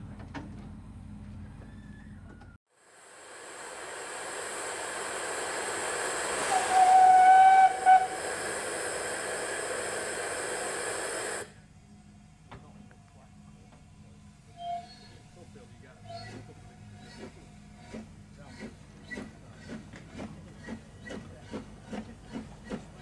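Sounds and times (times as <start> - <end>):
steam locomotive hissing: 2.8 - 11.6, 14.5 - 23.0
steam whistle blast: 4.1 - 11.5.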